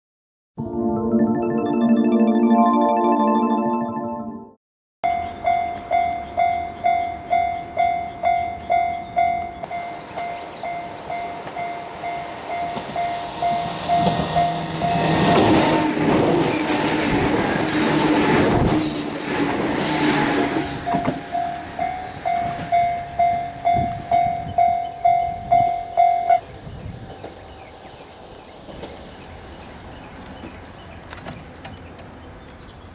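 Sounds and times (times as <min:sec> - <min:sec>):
train wheels on rails: 0:09.4 - 0:24.7, 0:25.5 - 0:32.8
level crossing warning bell: 0:20.6 - 0:26.5.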